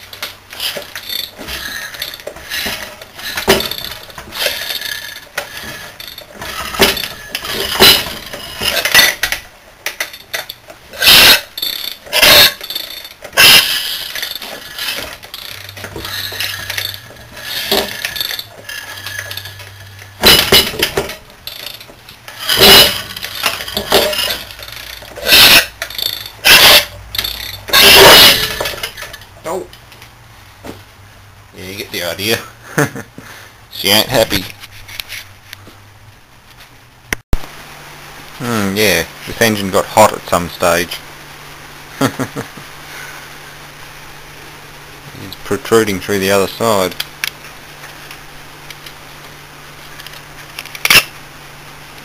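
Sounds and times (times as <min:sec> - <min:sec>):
tools clanking on metal engine: 0:00.0 - 0:29.3.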